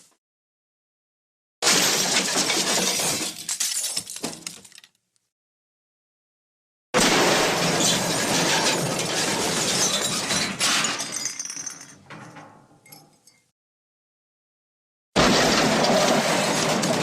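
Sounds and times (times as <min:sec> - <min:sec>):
glass breaking crash: 0:01.6 - 0:04.8, 0:07.0 - 0:12.0, 0:15.2 - 0:17.0
debris clattering: 0:01.6 - 0:05.0, 0:07.0 - 0:13.3, 0:15.2 - 0:17.0.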